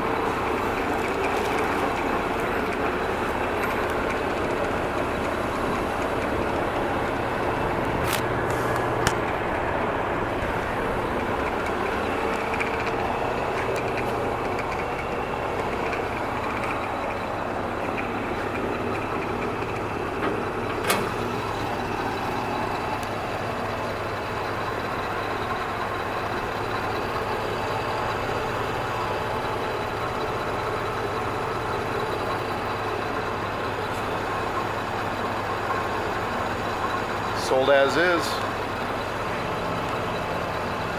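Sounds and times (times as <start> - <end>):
drill press motor humming: 0.0 - 32.7.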